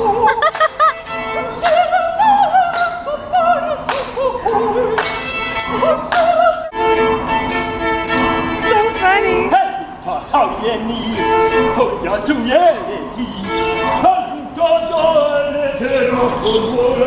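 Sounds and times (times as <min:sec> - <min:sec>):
sharp percussive beats: 0:00.0 - 0:06.5
operatic singing: 0:00.0 - 0:07.0, 0:08.5 - 0:17.0.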